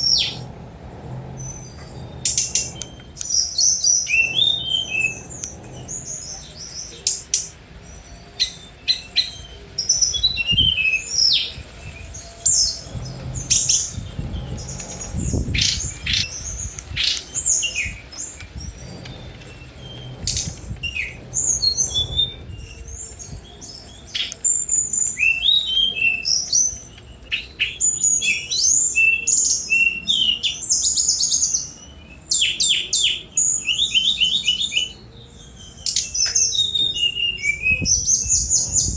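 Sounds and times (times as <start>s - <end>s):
faint low rumble: 0.0s - 8.0s, 10.2s - 24.0s
bird singing chirps and trills: 0.0s - 38.9s.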